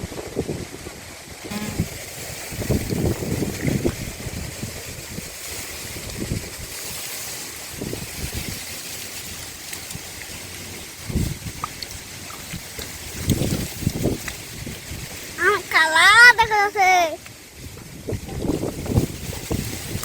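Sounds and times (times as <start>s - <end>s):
wind buffeting microphone: 0.0s - 7.0s, 7.6s - 8.6s, 11.0s - 15.4s, 17.5s - 20.0s
steady hiss: 1.4s - 20.0s.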